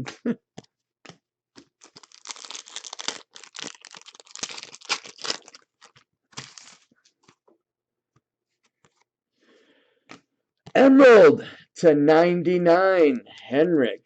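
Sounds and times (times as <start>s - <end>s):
card pack wrapper crinkling and tearing: 1.7s - 6.9s.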